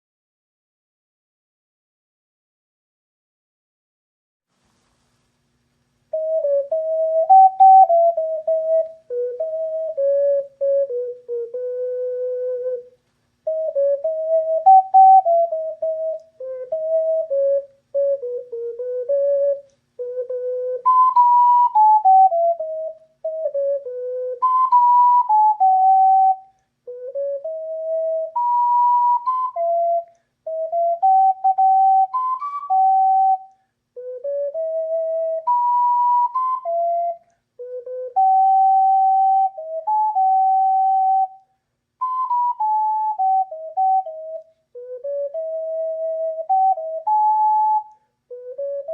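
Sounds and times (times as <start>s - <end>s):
ocarina melody: 6.1s - 48.9s.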